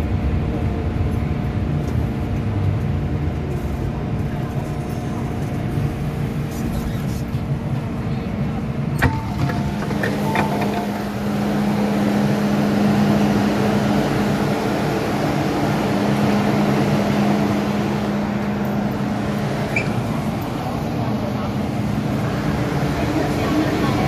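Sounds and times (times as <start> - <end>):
low traction motor hum: 0.0 - 24.0
train wheels rumbling on track: 0.0 - 24.0.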